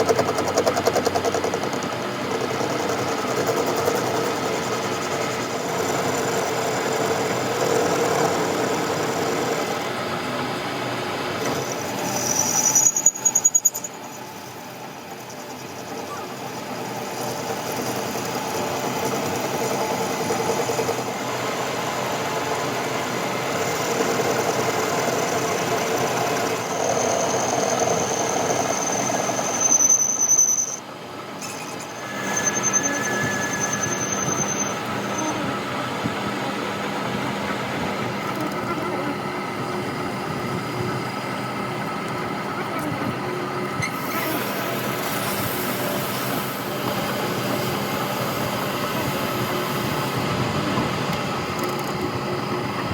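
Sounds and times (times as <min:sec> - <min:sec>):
power tool working metal: 0:02.3 - 0:43.0, 0:43.7 - 0:52.9
thin high-pitched squeal: 0:11.5 - 0:16.6, 0:26.7 - 0:35.6.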